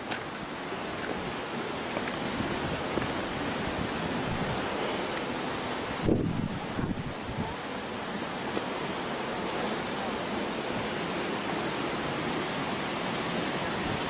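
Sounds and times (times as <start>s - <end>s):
waterfall roaring: 0.0s - 14.0s
wind buffeting microphone: 0.6s - 7.7s.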